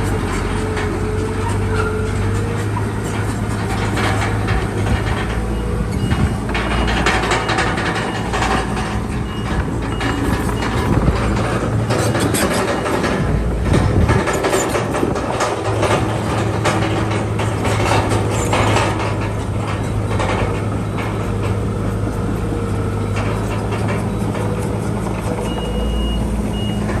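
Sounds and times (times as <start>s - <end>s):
diesel earthmoving machinery running: 0.0s - 27.0s
metallic clanking: 0.0s - 27.0s.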